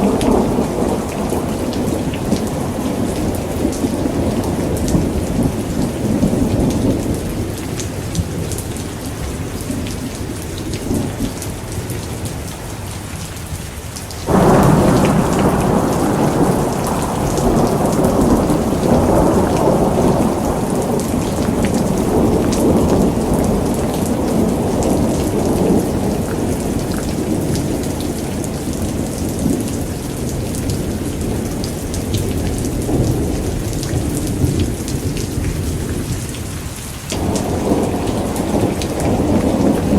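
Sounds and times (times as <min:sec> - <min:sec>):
rumbling thunder: 0:00.0 - 0:11.4, 0:14.3 - 0:39.9
steady rain: 0:00.0 - 0:39.9
loud thunderclap: 0:14.3 - 0:36.2, 0:37.2 - 0:39.9.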